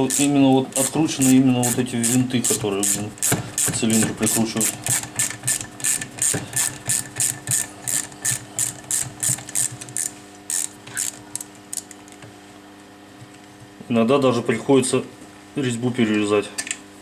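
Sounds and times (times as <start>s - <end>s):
ratchet tool clicking: 0.1s - 0.3s, 4.3s - 11.9s.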